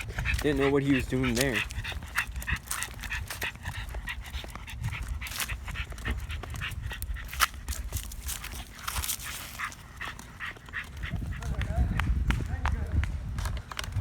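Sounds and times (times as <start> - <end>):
dog breathing and sniffing: 0.0 - 12.0
small clicks and scuffs: 0.0 - 14.0.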